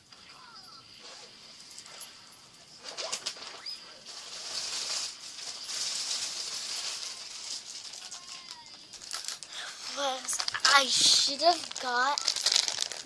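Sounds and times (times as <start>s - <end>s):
plastic packaging rustling: 2.8s - 13.0s.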